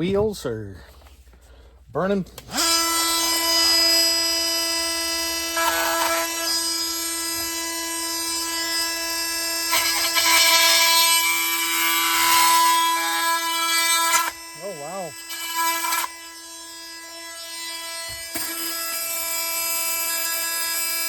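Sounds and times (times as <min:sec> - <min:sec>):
oscillating multi-tool buzzing: 0:02.5 - 0:21.0
blade rasping into plastic: 0:05.2 - 0:14.5.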